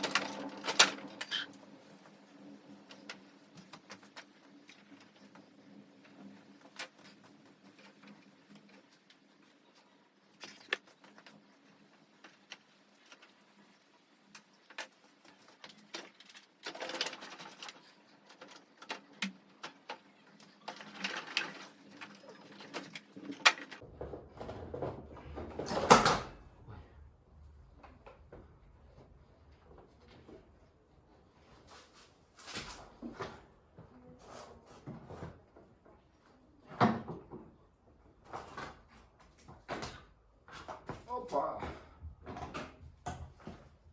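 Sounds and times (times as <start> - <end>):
hand tools clicking and knocking: 0.0 - 1.5.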